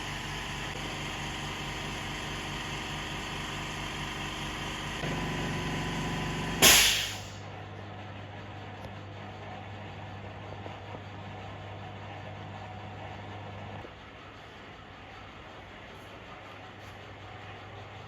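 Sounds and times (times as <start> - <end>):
steady machine hum: 0.0 - 7.5
hiss of released air: 6.6 - 7.4.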